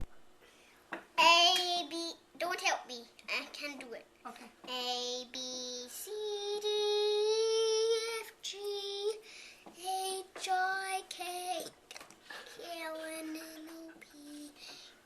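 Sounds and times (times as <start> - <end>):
child singing drawn-out notes: 4.7 - 9.2.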